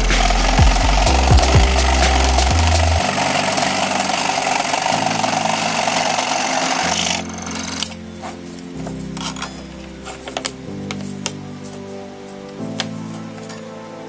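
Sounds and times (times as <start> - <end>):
power tool running on wood: 0.0 - 7.8
background music: 0.0 - 14.0.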